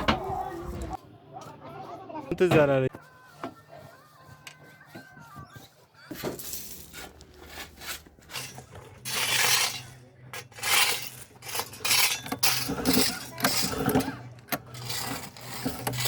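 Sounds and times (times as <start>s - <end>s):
rough scraping and rubbing: 6.1s - 16.0s.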